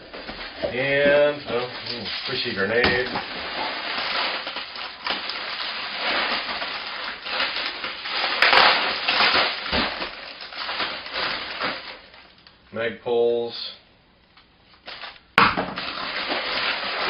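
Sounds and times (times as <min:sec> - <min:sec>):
packing material rustling: 0:00.1 - 0:12.5, 0:14.8 - 0:17.0.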